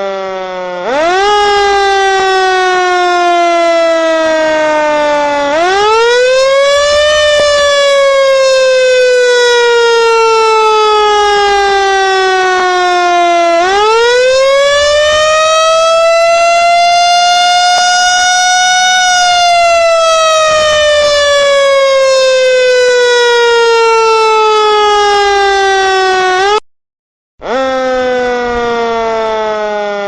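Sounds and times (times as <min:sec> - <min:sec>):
siren wailing slowly: 0:00.0 - 0:26.6, 0:27.4 - 0:30.0.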